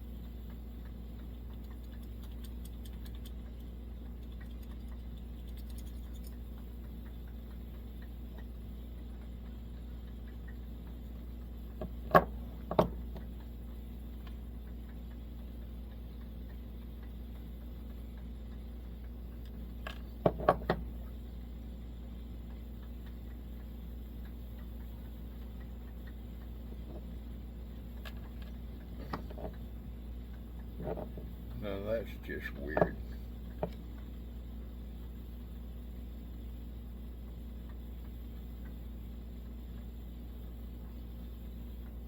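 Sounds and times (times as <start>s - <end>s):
steady low hum: 0.0s - 42.0s
small parts clicking and tapping: 0.2s - 13.5s, 19.3s - 20.9s, 27.9s - 29.7s.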